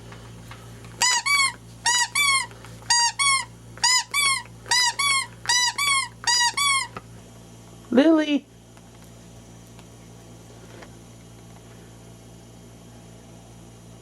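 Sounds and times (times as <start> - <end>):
squeaky toy squeaking: 1.0 - 7.0.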